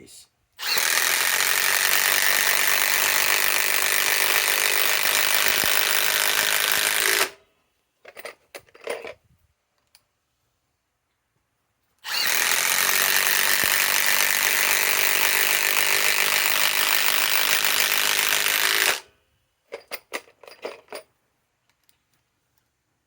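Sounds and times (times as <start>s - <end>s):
impact wrench hammering: 12.2s - 19.1s.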